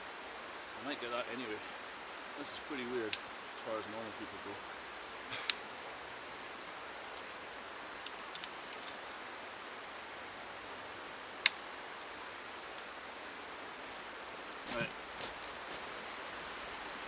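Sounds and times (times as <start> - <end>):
steady background hiss: 0.0 - 17.0
sticks snapping: 5.4 - 5.7, 8.0 - 9.0, 11.4 - 11.6.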